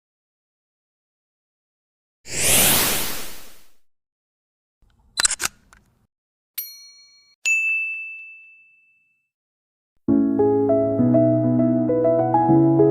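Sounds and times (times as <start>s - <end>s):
sharp clicks: 4.8s - 6.0s
bell-like dings: 6.6s - 9.3s
soft keyboard music: 10.0s - 12.9s.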